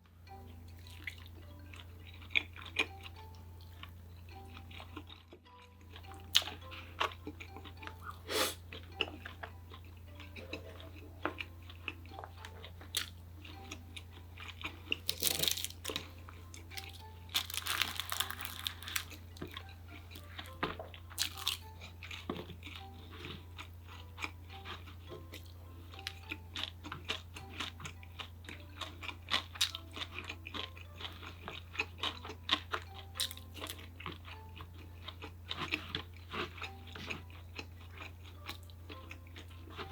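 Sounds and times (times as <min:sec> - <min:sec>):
person chewing and crunching food: 0:00.0 - 0:39.9.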